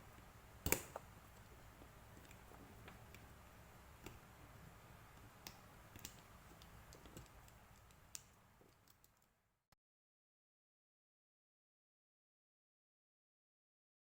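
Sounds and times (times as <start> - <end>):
small clicks and taps: 5.2 - 9.3.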